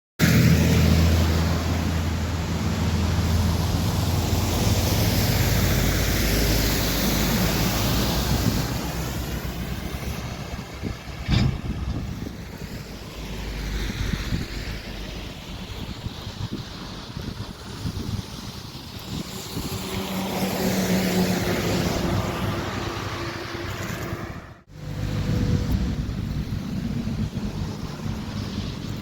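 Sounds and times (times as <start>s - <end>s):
road vehicle passing: 0.2s - 29.0s
wind on the microphone: 3.0s - 29.0s.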